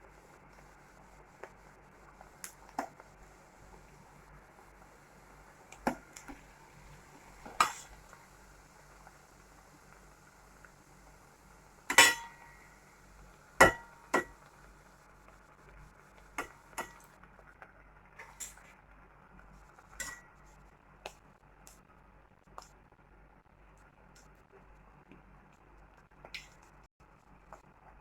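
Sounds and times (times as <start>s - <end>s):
snacks frying in oil: 0.0s - 28.0s
metal spoon clinking on frying pan: 11.9s - 12.6s.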